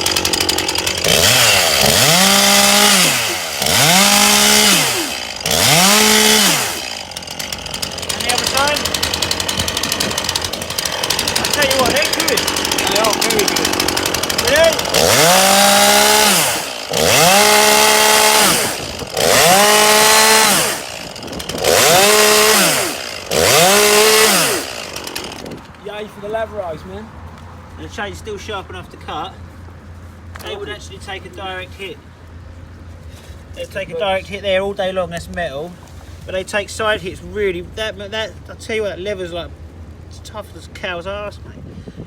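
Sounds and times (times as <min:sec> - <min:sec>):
chainsaw revving: 0:00.0 - 0:25.6.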